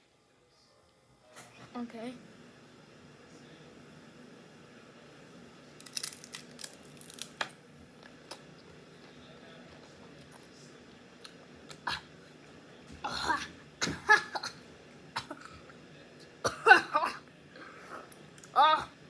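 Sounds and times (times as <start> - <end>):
person clearing throat: 11.7 - 12.1, 13.0 - 14.6, 15.2 - 15.6, 16.4 - 17.2
person coughing: 13.0 - 14.6, 15.2 - 15.6, 16.4 - 17.2.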